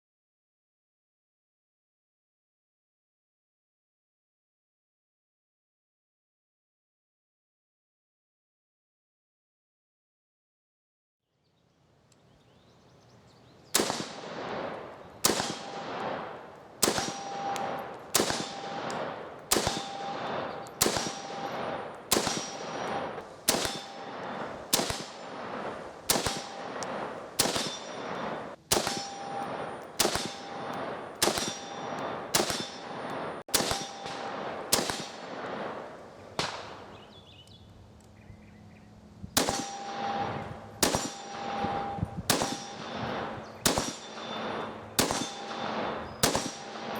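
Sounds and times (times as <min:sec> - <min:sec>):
rifle shots: 0:13.7 - 0:37.1, 0:39.4 - 0:46.9
steel targets ringing: 0:13.8 - 0:37.0, 0:39.4 - 0:46.9.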